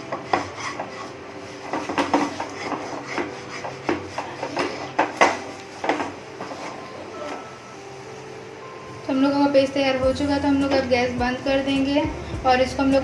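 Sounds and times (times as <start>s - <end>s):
spoon scraping and knocking pan: 0.0s - 6.8s.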